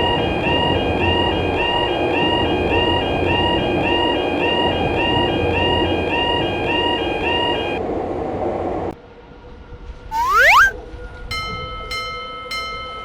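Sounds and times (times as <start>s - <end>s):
railroad crossing bell ringing: 11.4s - 13.0s.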